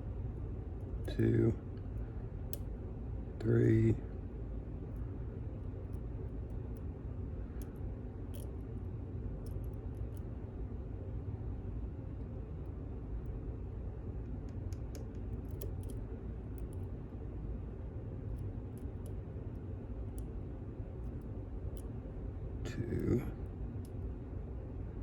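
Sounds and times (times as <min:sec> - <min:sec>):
steady low hum: 0:00.0 - 0:25.0
lock pick clicking on pins: 0:14.5 - 0:16.9.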